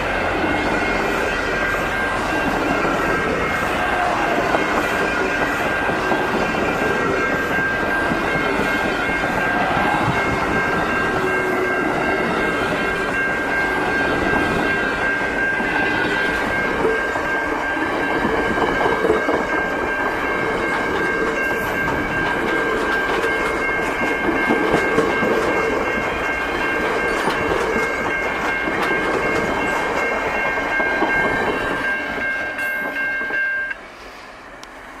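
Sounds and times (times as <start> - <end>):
steady high ringing tone: 0.0 - 34.6
train wheels rumbling on rails: 0.0 - 35.0.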